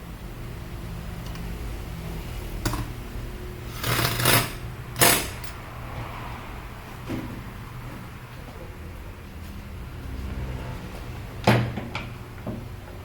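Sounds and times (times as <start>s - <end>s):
shop machinery hum: 0.0s - 13.0s
metal scraping rattle: 3.7s - 5.6s
metal parts clicking and knocking: 3.8s - 5.6s.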